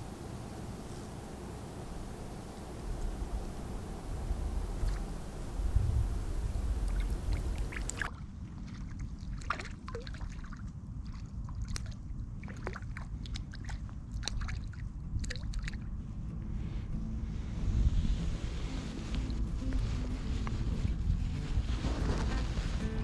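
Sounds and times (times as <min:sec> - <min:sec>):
steady hiss: 0:00.0 - 0:08.1, 0:16.6 - 0:23.0
wind rumbling on microphone: 0:00.0 - 0:09.5, 0:13.0 - 0:23.0.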